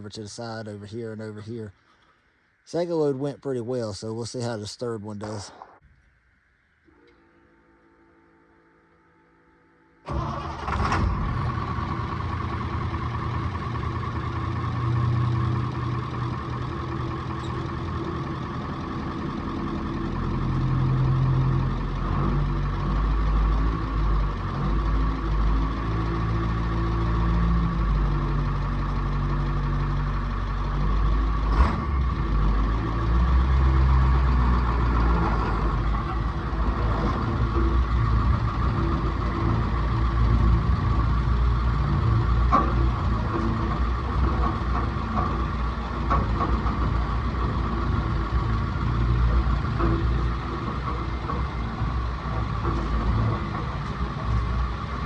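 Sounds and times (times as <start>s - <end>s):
heavy vehicle engine rumbling: 0.0s - 5.8s, 10.0s - 55.0s.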